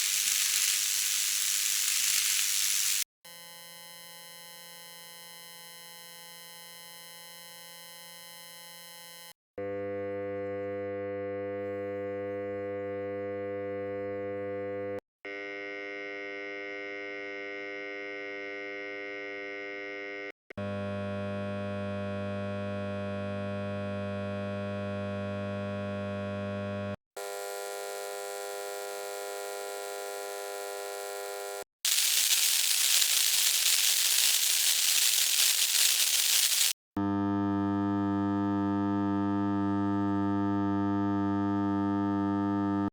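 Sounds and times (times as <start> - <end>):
hissy electrical buzz: 0.0 - 3.0, 31.9 - 36.8
electrical hum: 31.9 - 42.9.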